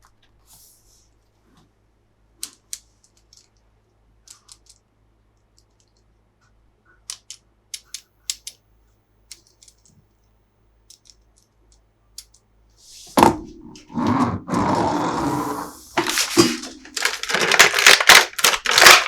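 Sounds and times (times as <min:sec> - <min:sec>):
plastic toy parts clicking: 0:02.4 - 0:03.6, 0:04.2 - 0:04.8, 0:07.0 - 0:08.6, 0:09.3 - 0:10.0, 0:10.9 - 0:12.4, 0:16.0 - 0:19.0
loud rough scraping and rustling: 0:12.9 - 0:19.0.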